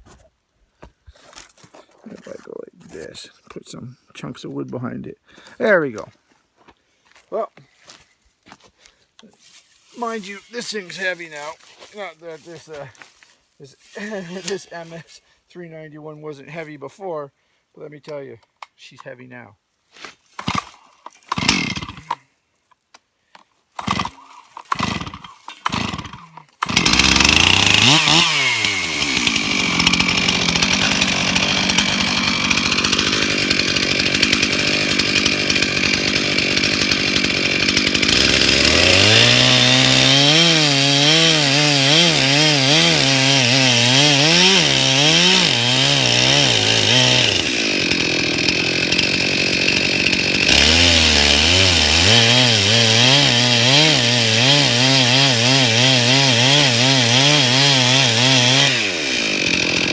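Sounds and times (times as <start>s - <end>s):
chainsaw cutting a log: 20.4s - 22.2s, 23.8s - 59.9s.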